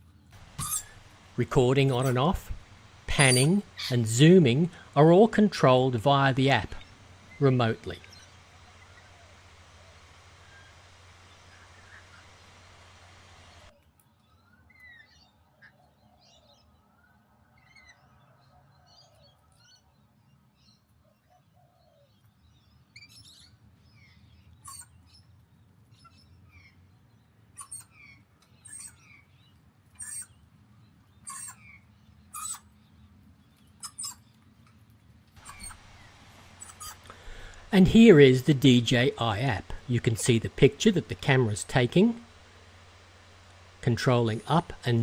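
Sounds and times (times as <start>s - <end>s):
birds chirping and calling: 0.4s - 13.6s, 27.6s - 30.4s, 31.0s - 34.4s, 35.4s - 45.0s.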